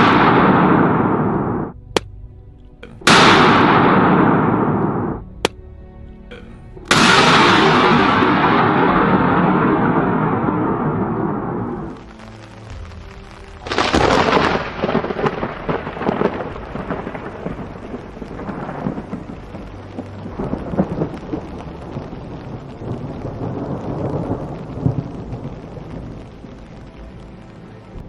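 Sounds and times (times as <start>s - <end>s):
thunder clap and rumble: 0.0s - 2.1s, 2.8s - 5.6s, 6.3s - 28.0s.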